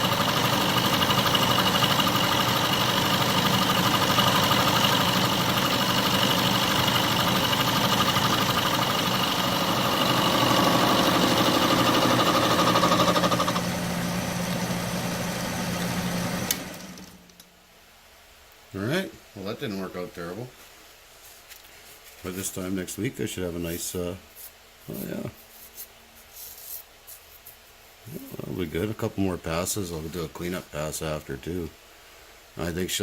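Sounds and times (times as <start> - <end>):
lathe milling steel: 0.0 - 17.2.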